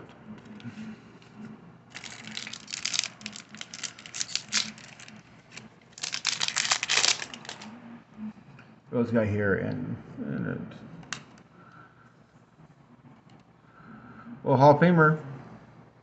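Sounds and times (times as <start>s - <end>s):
foil wrapper crinkling: 1.9s - 7.7s.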